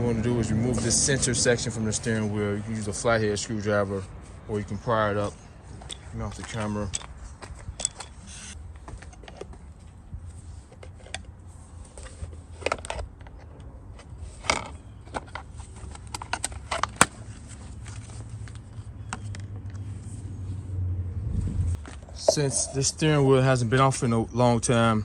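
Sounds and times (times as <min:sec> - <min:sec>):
hand tools clicking and tapping: 0:05.8 - 0:08.3.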